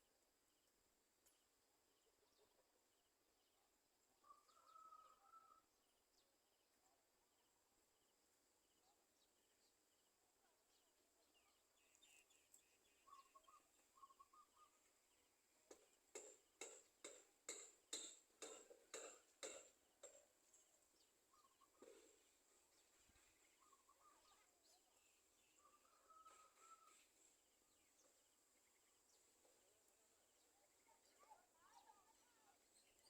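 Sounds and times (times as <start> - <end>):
bird calls: 11.8 - 14.9, 21.3 - 22.2, 22.8 - 27.1
rapid short sharp bird calls: 13.0 - 14.9.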